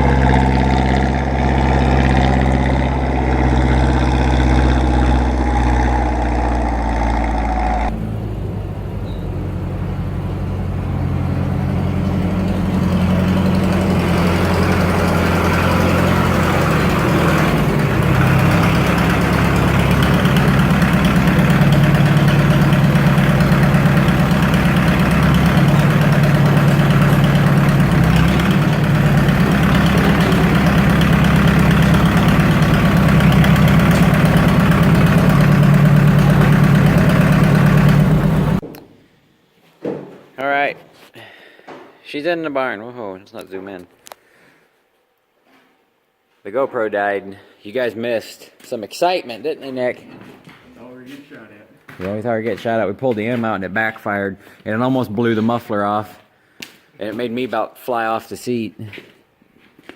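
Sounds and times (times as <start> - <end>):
tractor engine running: 0.0 - 38.7.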